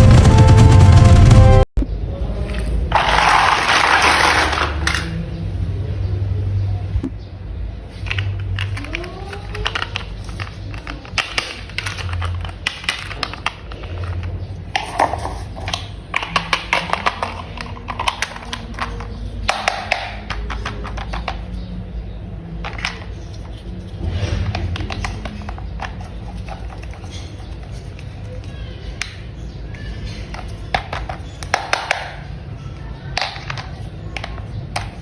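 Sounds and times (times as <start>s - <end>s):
plastic toy parts clicking: 2.5s - 5.2s, 8.0s - 21.6s, 22.6s - 29.2s, 30.2s - 32.4s, 33.1s - 35.0s.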